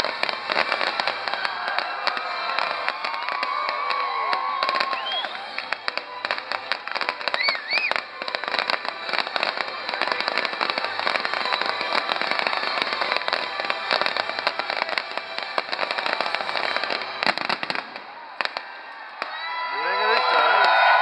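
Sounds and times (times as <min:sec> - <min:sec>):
fireworks crackling: 0:00.0 - 0:21.0
rising whistle: 0:04.0 - 0:05.6, 0:07.3 - 0:08.0.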